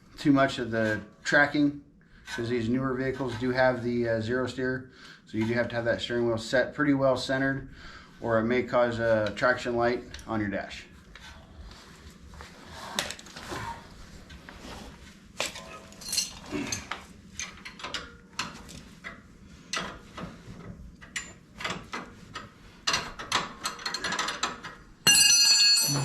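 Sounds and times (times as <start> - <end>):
ringing metallic hit: 25.1 - 26.0.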